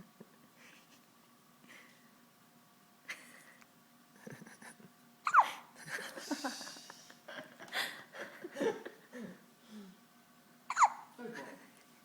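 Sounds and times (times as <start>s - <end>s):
baby hiccuping: 5.3s - 5.6s, 10.7s - 11.1s.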